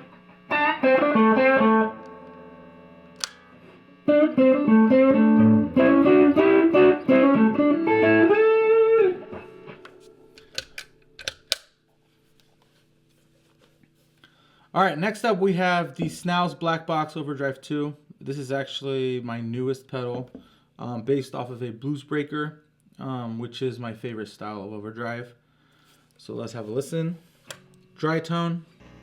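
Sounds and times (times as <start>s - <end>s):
overdriven electric guitar: 0.0s - 11.4s.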